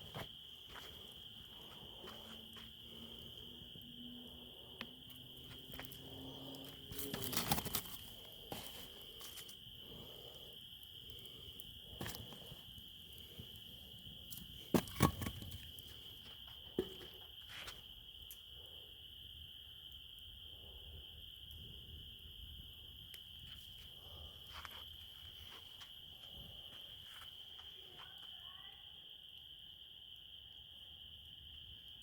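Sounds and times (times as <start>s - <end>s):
crickets trilling: 0.0s - 32.0s
wood fire crackling and popping: 0.2s - 18.5s.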